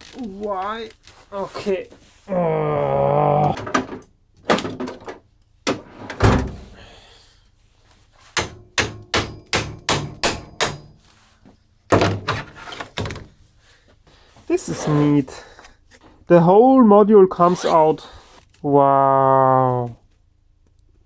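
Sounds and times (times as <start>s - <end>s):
knocks and thuds on equipment chassis: 11.9s - 13.4s.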